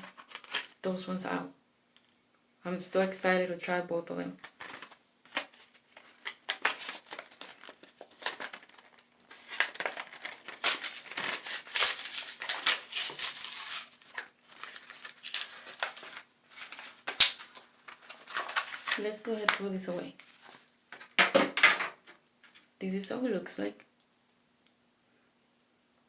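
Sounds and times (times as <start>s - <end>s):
packaging crinkling and rustling: 0.0s - 0.8s, 4.4s - 19.6s, 20.2s - 22.7s.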